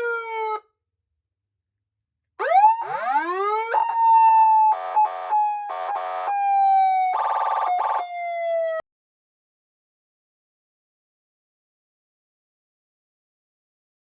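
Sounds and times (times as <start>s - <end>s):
electronic police siren: 0.0s - 0.7s, 2.4s - 8.8s.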